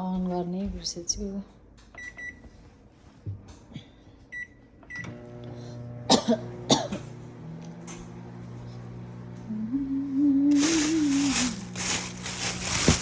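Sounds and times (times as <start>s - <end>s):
microwave keypad beeping: 2.0s - 2.4s, 4.3s - 5.2s
microwave oven humming: 4.3s - 13.0s.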